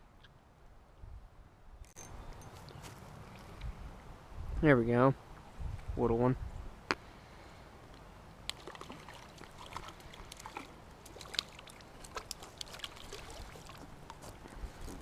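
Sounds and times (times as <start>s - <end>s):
water splashing: 8.4s - 15.0s.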